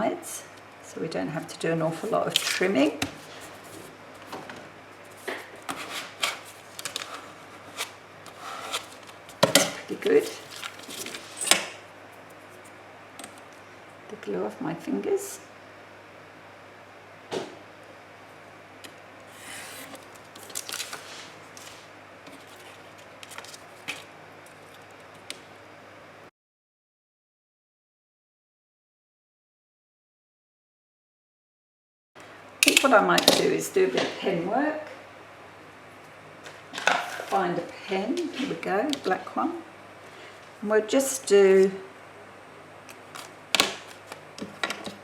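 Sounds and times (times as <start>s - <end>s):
paper rustling: 1.9s - 12.8s, 19.4s - 25.2s, 42.9s - 45.0s.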